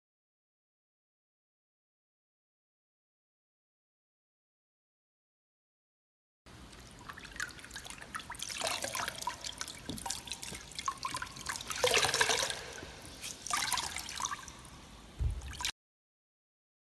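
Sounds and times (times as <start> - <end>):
water dripping from wrung cloth: 6.6 - 15.7.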